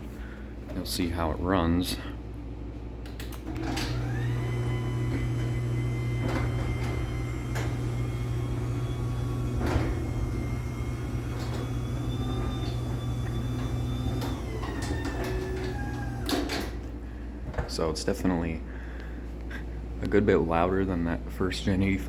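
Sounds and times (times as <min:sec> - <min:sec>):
garage door opener clicks: 0:03.0 - 0:16.9
motor humming and whining: 0:03.0 - 0:17.0
door sections clunking: 0:03.1 - 0:17.8.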